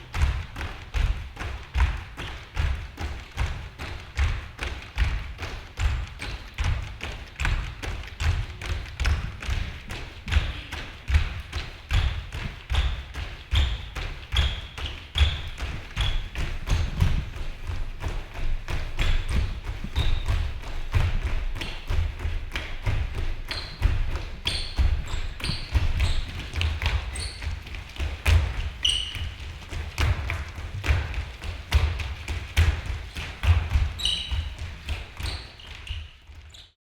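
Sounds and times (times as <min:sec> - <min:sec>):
short high squeaks: 0:28.8 - 0:29.3, 0:34.0 - 0:34.5.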